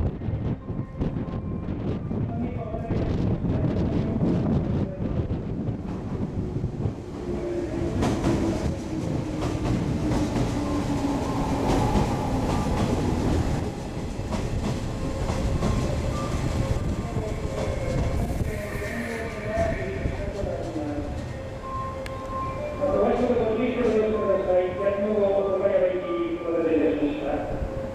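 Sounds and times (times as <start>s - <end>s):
train running tone: 6.3s - 24.5s.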